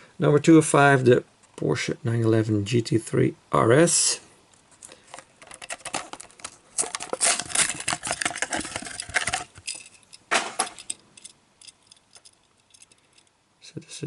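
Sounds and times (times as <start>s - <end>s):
plastic packaging crinkling: 4.8s - 10.9s.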